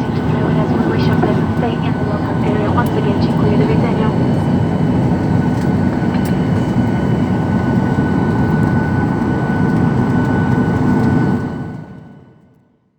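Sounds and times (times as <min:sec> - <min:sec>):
thin steady whine: 0:00.0 - 0:06.8
deep jet engine rumble: 0:00.0 - 0:12.0.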